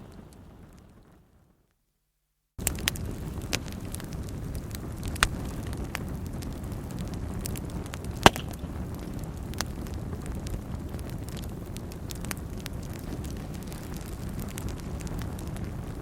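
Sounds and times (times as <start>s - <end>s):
wood fire crackling and popping: 0.0s - 1.4s, 2.6s - 16.0s
rumble of fire flames: 0.0s - 1.6s, 2.6s - 16.0s.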